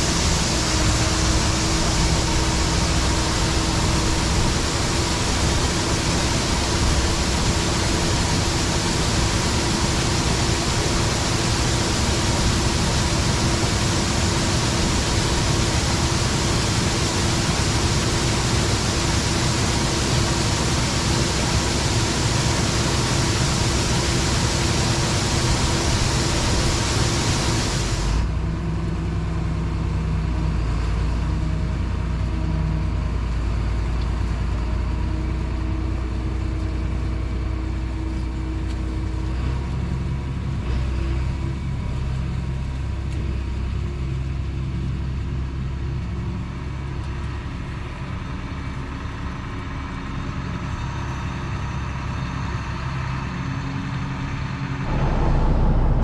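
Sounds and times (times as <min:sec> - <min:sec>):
loud rushing noise: 0:00.0 - 0:28.3, 0:54.9 - 0:56.0
engine rumble: 0:00.0 - 0:32.4, 0:54.8 - 0:56.0
steady machine tones: 0:54.9 - 0:56.0.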